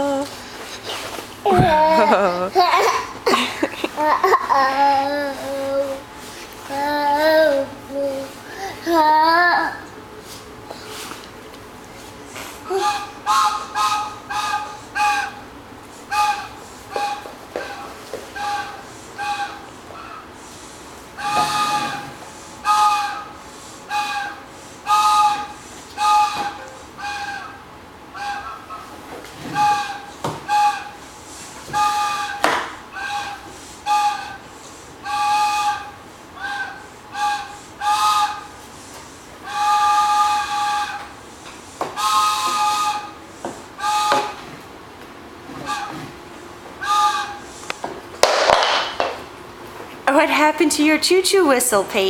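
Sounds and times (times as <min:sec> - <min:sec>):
toy train whistle toots: 0:12.7 - 0:15.4, 0:16.1 - 0:20.4, 0:21.2 - 0:28.8, 0:29.5 - 0:31.1, 0:31.7 - 0:38.6, 0:39.4 - 0:41.2, 0:41.9 - 0:43.2, 0:43.8 - 0:44.5, 0:45.6 - 0:46.1, 0:46.8 - 0:47.6.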